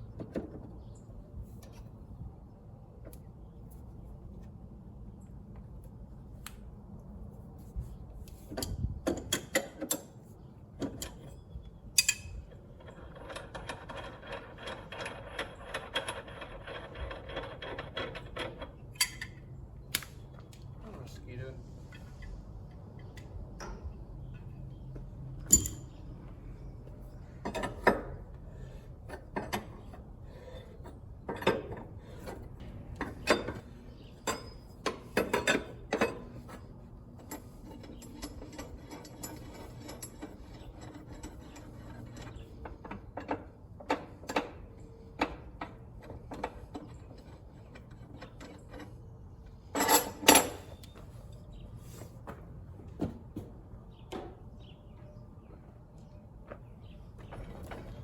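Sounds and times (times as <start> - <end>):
metal clanks: 49.6 - 50.9
hand tools clinking on metal: 49.7 - 51.0.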